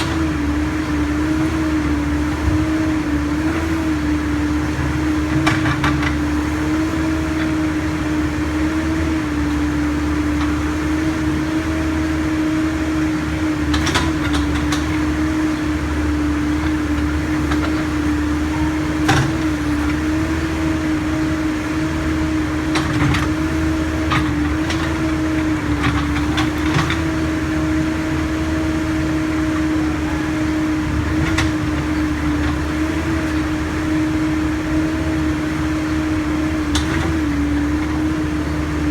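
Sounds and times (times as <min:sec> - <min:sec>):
diesel engine and hydraulics humming: 0:00.0 - 0:38.9
knocks and clanks from digging: 0:13.7 - 0:20.6, 0:22.7 - 0:27.4, 0:36.7 - 0:38.0.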